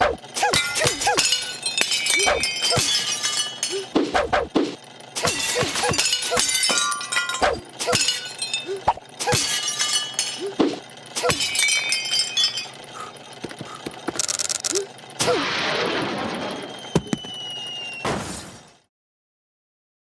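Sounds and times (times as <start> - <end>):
glass and crockery smashing: 0.4 - 4.0, 5.2 - 12.9.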